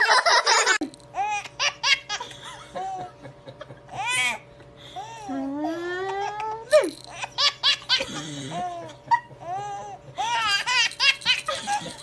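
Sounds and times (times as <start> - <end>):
baby laughing: 7.1 - 12.0.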